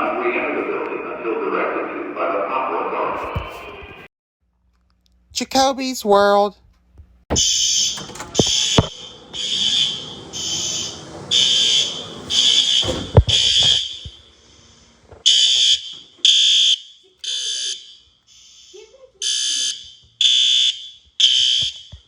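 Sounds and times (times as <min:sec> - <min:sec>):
fire alarm horn blasts: 0:07.3 - 0:22.0
thump: 0:12.4 - 0:14.2.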